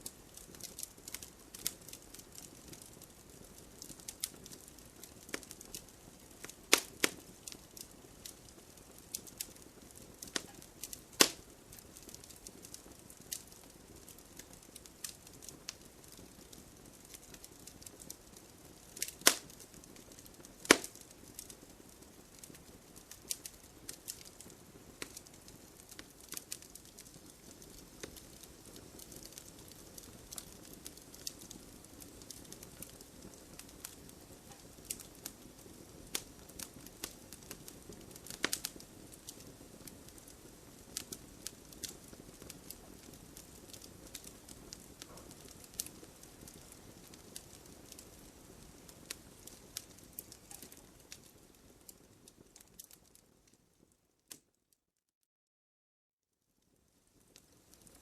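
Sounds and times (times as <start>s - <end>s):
wood fire crackling: 0.0s - 54.5s, 56.6s - 58.0s
faint steady hiss: 0.0s - 54.6s, 56.5s - 58.0s.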